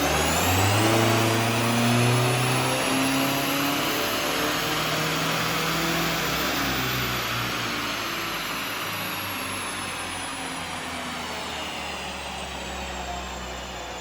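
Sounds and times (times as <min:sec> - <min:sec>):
diesel car engine running: 0:00.0 - 0:14.0
high whistle: 0:05.6 - 0:14.0.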